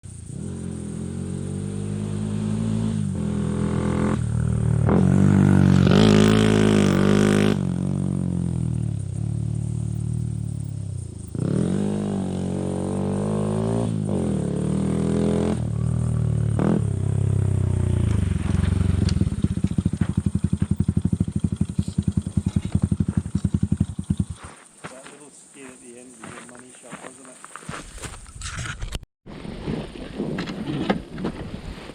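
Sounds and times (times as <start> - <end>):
motorcycle engine revving: 0.1 - 24.7.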